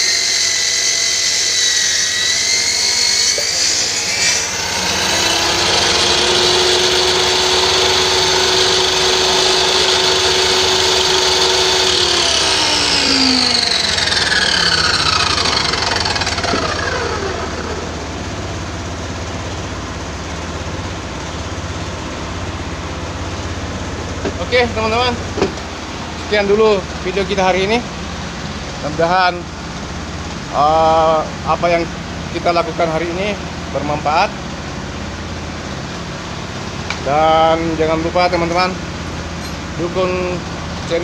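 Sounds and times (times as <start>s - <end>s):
circular saw motor whining: 0.0s - 22.9s.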